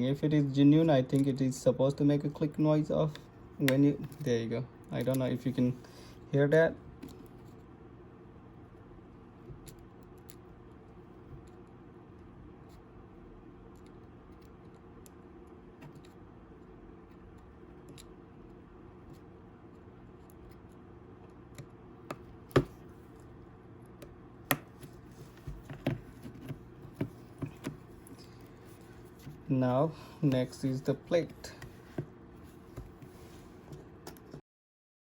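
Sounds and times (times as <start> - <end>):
low steady hum: 0.0 - 34.4.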